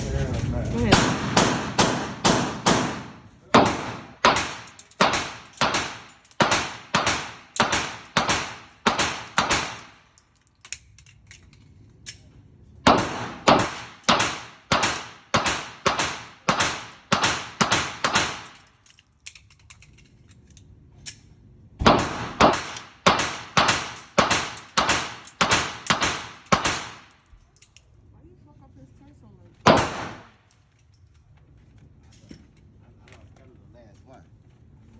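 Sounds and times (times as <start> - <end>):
pistol shots with echo: 0.9 - 10.0, 12.8 - 18.6, 21.8 - 27.2, 29.6 - 30.4.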